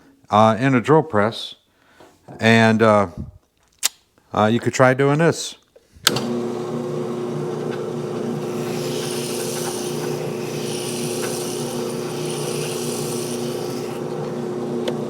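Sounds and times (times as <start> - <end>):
drill press motor humming: 6.1 - 15.0.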